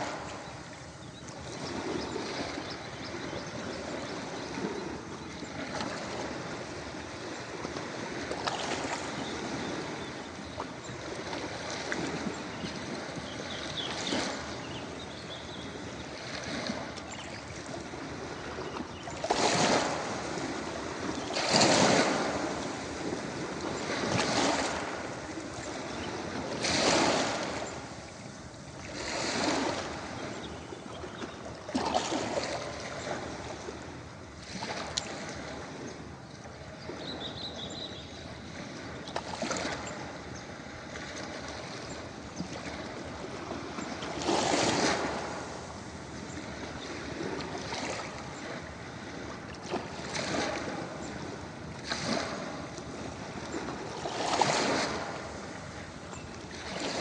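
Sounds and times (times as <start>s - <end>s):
ocean waves on a beach: 0.0s - 57.0s.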